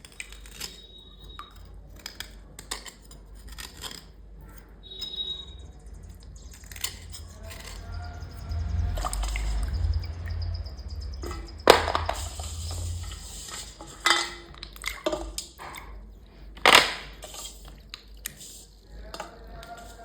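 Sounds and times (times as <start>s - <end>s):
small hard pieces clinking: 0.0s - 4.1s, 6.1s - 7.8s.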